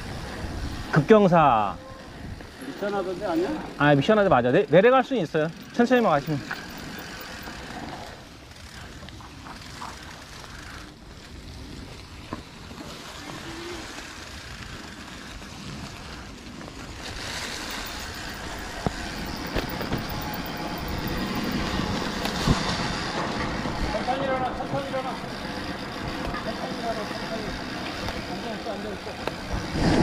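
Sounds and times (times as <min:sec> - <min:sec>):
bike tyre and trail noise: 0:00.0 - 0:30.0
wind on microphone: 0:29.3 - 0:30.0.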